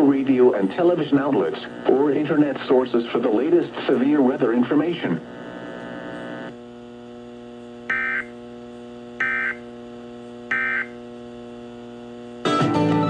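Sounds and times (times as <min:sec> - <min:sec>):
electrical hum: 0:00.0 - 0:13.0
warbling digital data tones: 0:07.9 - 0:08.3, 0:09.2 - 0:09.6, 0:10.5 - 0:11.0.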